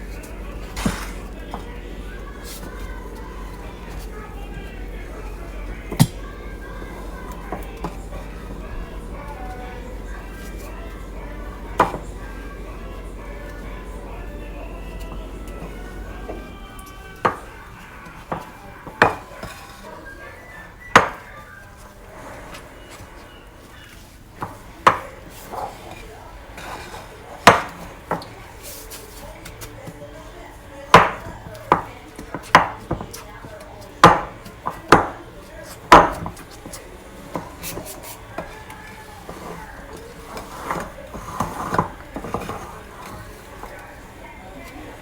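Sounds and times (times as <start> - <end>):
utensil knocking against mixing bowl: 5.7 - 16.4, 34.0 - 35.2, 35.9 - 36.5.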